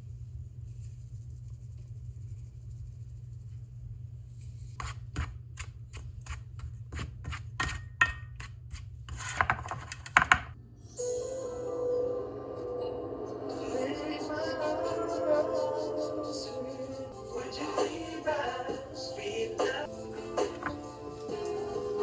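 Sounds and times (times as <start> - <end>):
music: 10.8 - 22.0.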